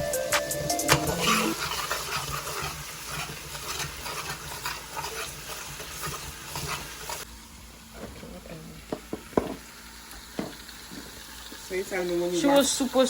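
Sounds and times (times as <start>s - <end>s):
background music: 0.0s - 1.6s
food sizzling in hot oil: 0.0s - 13.0s.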